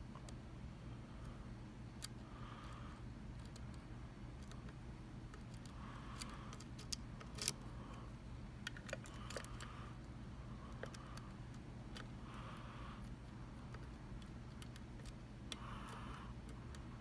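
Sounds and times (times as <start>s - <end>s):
lock-picking tools clicking: 5.3s - 7.6s.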